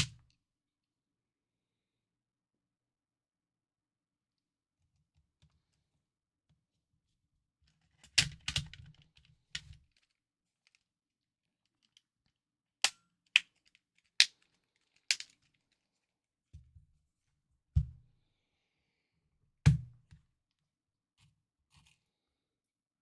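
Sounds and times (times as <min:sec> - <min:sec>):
plastic parts clicking: 0:12.8 - 0:15.8.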